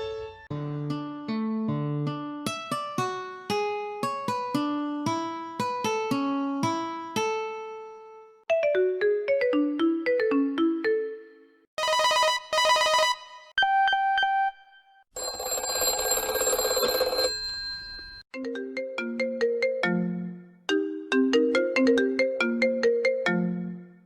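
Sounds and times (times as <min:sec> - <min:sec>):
harsh noisy phone ring: 0:11.8 - 0:13.5, 0:15.2 - 0:18.0
buzzy electronic phone rings: 0:11.8 - 0:13.8
plucked ringtone melody: 0:11.8 - 0:14.7.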